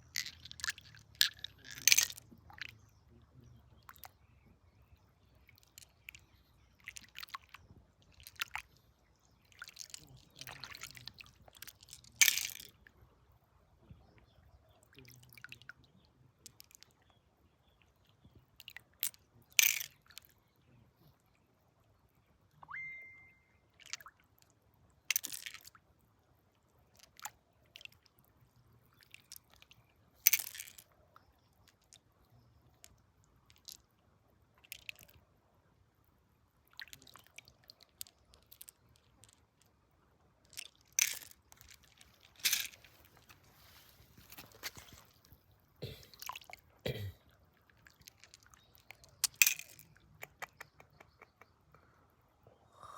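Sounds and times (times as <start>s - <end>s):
short whistle-like tone: 22.6s - 23.6s
rock and gravel crunching: 40.7s - 46.2s.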